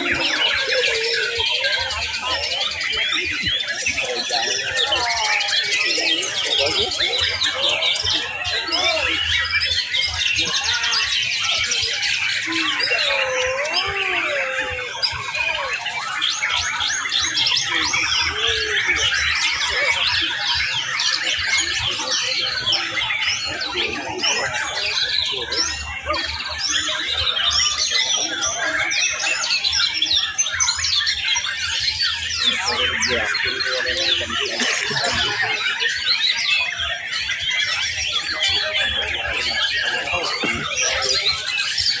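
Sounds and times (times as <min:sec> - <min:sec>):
chorus of songbirds whistling: 0:00.0 - 0:42.0.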